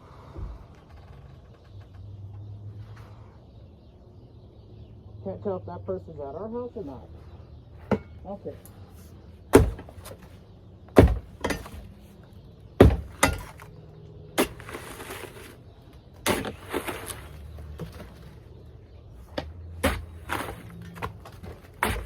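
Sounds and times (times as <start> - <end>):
heavy blows striking a hot tub: 9.5 - 10.2, 11.0 - 11.9, 12.8 - 13.7, 19.8 - 22.0.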